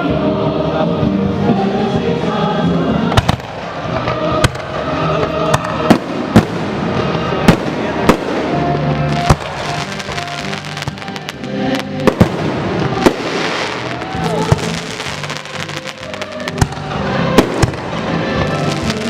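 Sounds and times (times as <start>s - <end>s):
music with held tones: 0.0s - 19.0s
fireworks bangs: 3.1s - 19.0s.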